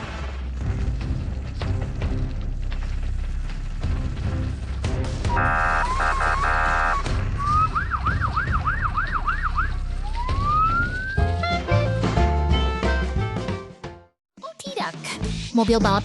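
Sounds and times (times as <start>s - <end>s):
two-tone siren: 5.3s - 11.2s
wailing siren: 5.3s - 11.2s
yelp siren sweeping: 5.3s - 11.2s.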